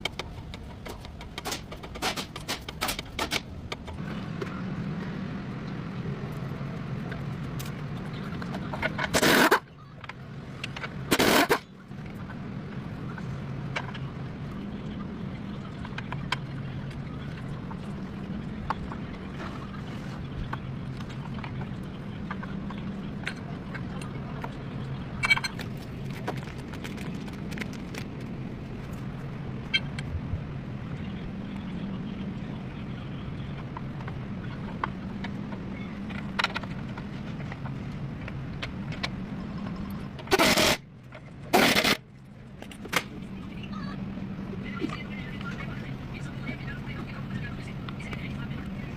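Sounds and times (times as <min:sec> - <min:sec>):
truck engine running: 0:03.4 - 0:40.4.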